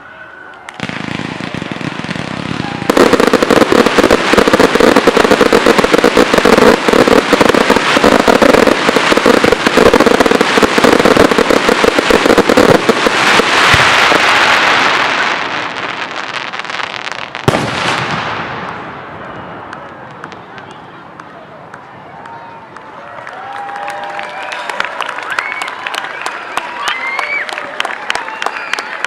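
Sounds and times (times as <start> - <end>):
fireworks bangs and crackling: 0.7 - 22.0.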